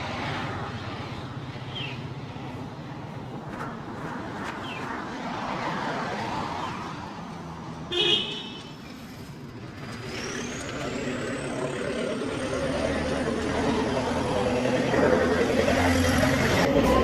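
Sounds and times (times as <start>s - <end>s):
street traffic: 0.0s - 17.0s
vehicle horn honk: 7.9s - 8.8s.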